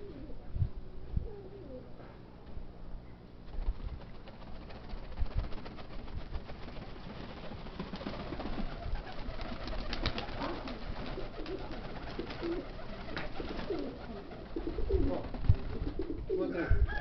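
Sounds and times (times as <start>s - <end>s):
pigeons cooing: 0.0s - 0.5s, 1.2s - 2.1s, 7.2s - 17.0s
wind rumble on microphone: 0.0s - 1.4s, 14.8s - 17.0s.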